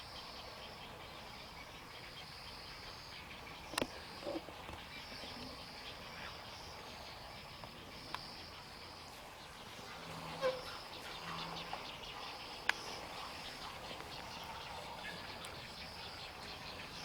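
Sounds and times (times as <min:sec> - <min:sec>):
insects droning: 0:00.0 - 0:17.0
faint clicks: 0:03.7 - 0:04.8, 0:12.6 - 0:13.0, 0:15.2 - 0:15.6.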